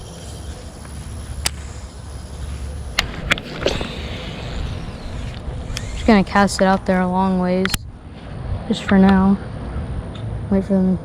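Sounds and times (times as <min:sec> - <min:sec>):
wind rumbling on microphone: 0:00.0 - 0:11.0
fishing reel clicks: 0:03.4 - 0:07.8.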